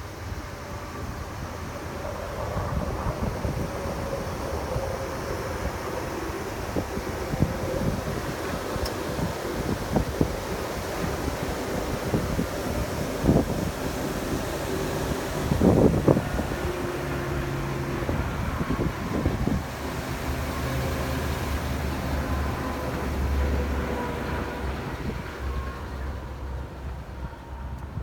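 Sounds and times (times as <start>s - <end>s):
vehicle engine rumbling: 0.0s - 28.0s
wind on microphone: 0.9s - 22.8s.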